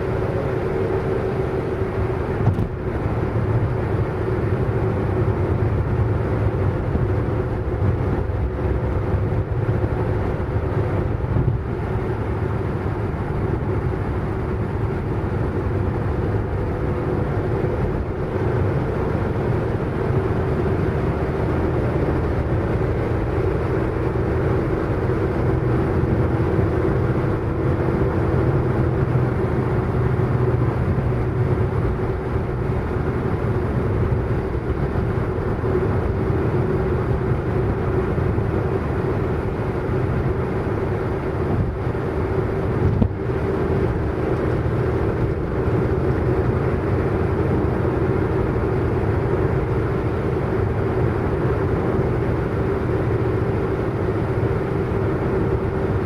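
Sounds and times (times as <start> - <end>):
car engine hum: 0.0 - 56.0
road and tyre noise: 0.0 - 56.0.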